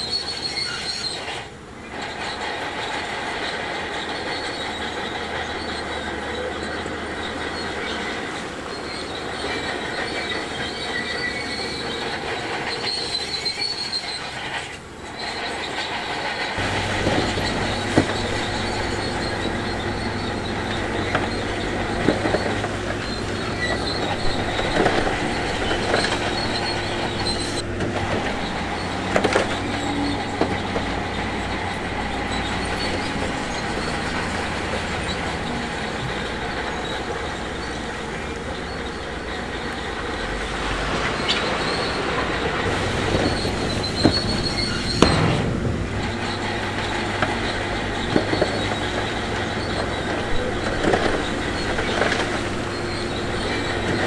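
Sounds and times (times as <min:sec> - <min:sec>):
diesel engine hum: 0:00.0 - 0:54.0
steel tracks squealing and clanking: 0:00.0 - 0:54.0
sharp knocks of stone or metal: 0:44.8 - 0:47.5.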